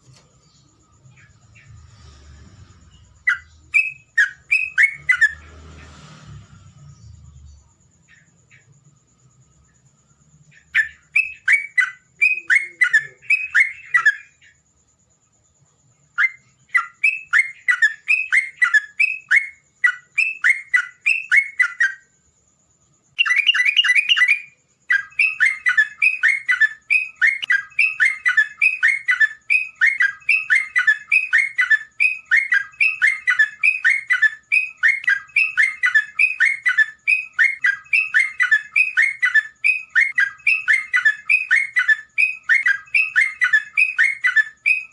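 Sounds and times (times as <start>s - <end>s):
bird chattering song: 2.9s - 5.4s, 10.4s - 14.7s, 16.0s - 22.2s, 23.1s - 44.9s.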